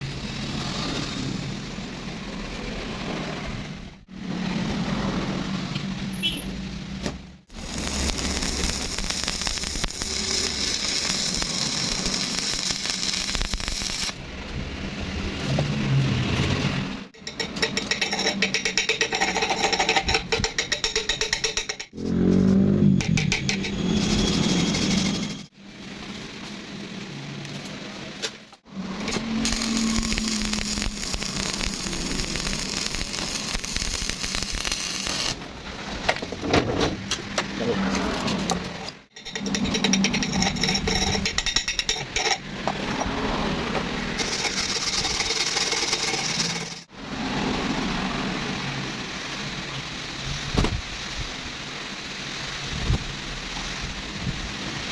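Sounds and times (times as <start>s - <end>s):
welding arc crackling: 7.5s - 14.3s, 28.8s - 35.5s, 44.1s - 46.9s.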